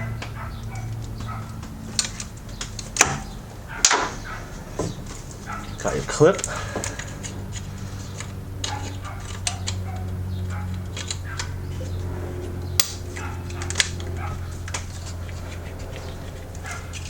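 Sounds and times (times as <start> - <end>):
steady low hum: 0.0 - 17.0
hand tools clicking and clinking: 5.0 - 17.0.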